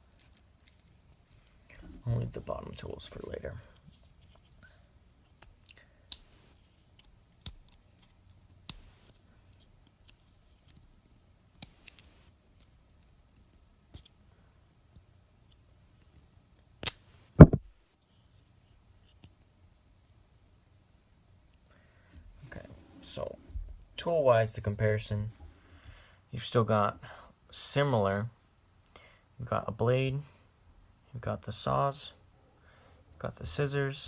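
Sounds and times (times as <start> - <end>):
knocks with dull thud: 17.4 - 17.7.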